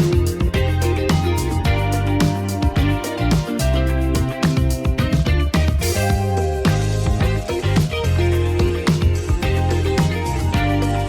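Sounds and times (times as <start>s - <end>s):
upbeat music with plucked guitar: 0.0s - 11.0s.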